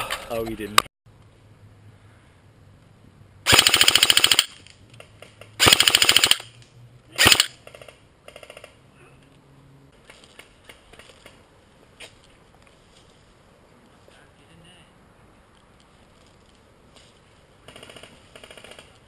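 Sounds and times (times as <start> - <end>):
airsoft rifle firing bursts: 3.5 - 4.6, 5.6 - 6.5, 7.2 - 7.5.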